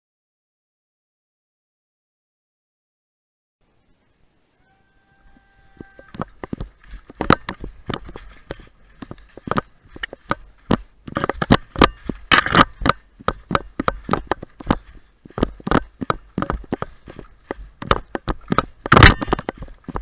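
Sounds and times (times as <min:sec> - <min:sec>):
sharp clicks and crunches: 0:05.8 - 0:20.0.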